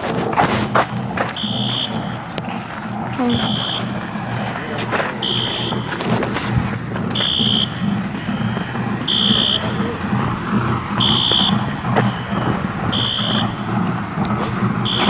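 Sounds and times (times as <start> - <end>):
low rumble: 0.0 - 15.0
fire alarm blasts: 1.2 - 2.4, 3.2 - 4.4, 5.0 - 6.2, 7.0 - 13.9, 14.8 - 15.0.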